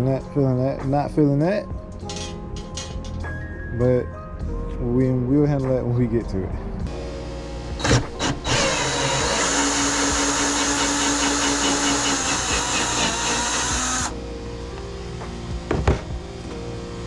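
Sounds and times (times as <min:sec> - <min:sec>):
background music: 0:00.0 - 0:17.0
power tool motor running: 0:07.7 - 0:14.1.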